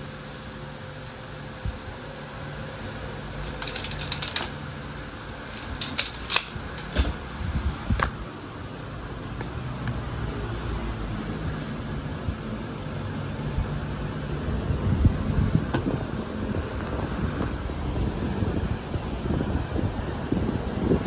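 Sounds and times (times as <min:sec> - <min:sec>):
steady low hum: 0:00.0 - 0:21.0
rapid clicking and rattling: 0:03.3 - 0:04.7, 0:05.4 - 0:07.0.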